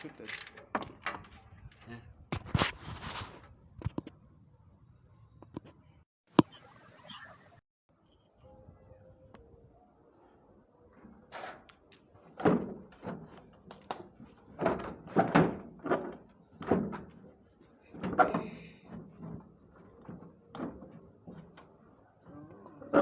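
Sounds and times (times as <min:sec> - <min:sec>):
irregular knocks and clunks: 0:00.0 - 0:02.5, 0:12.2 - 0:23.0.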